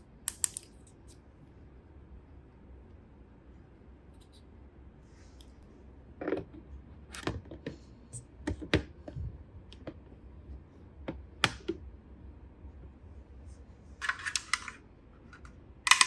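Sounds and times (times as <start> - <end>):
plastic pieces clicking and tapping: 0.3 - 1.0, 15.4 - 16.0.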